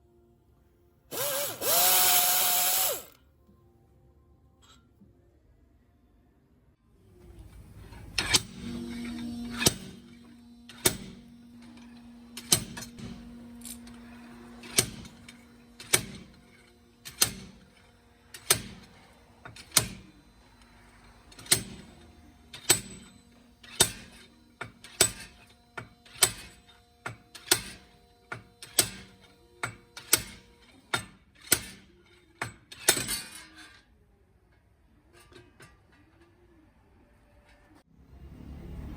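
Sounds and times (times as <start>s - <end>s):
steady low hum: 7.0s - 25.7s.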